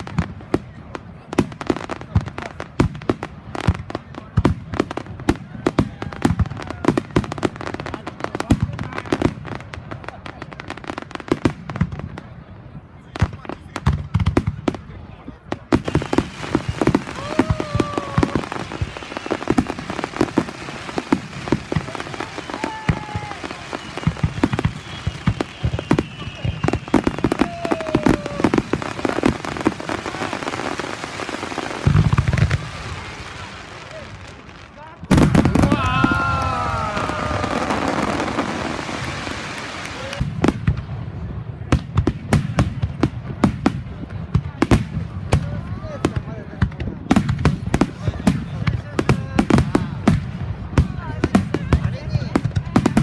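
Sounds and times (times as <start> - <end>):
crackling firework pops: 13.1 - 41.0, 41.6 - 53.0.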